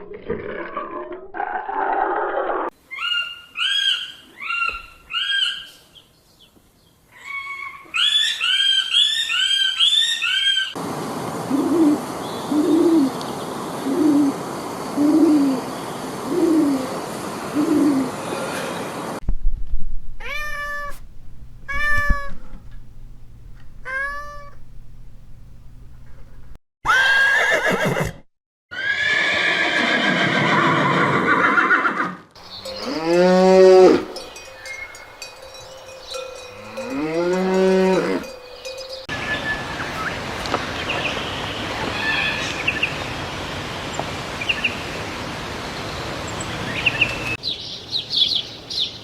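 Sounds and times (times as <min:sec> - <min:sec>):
steady hiss: 0:10.8 - 0:19.2
low hoots: 0:11.4 - 0:18.4, 0:21.6 - 0:22.8, 0:23.8 - 0:24.7
animal calls falling in pitch: 0:20.2 - 0:21.0, 0:21.7 - 0:22.6
short high animal calls: 0:20.2 - 0:21.0, 0:21.6 - 0:22.6, 0:23.8 - 0:24.6.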